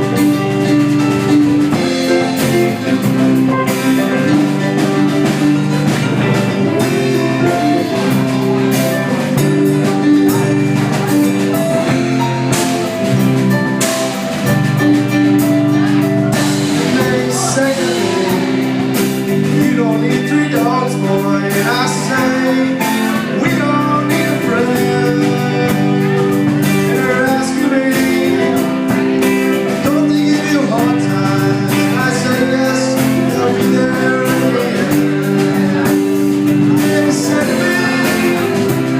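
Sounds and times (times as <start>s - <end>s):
blues-rock music: 0.0s - 38.9s
drums: 0.0s - 38.9s
guitar: 0.0s - 38.9s
person singing: 0.0s - 38.9s.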